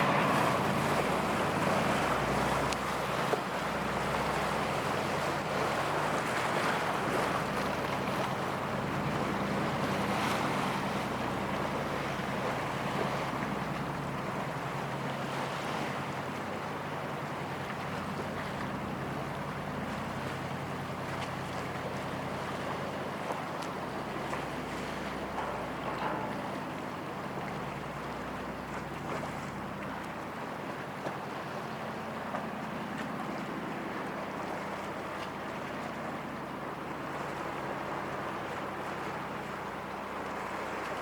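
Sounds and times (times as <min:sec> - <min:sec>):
boat engine hum: 0:00.0 - 0:41.0
water rushing from hull: 0:00.0 - 0:41.0.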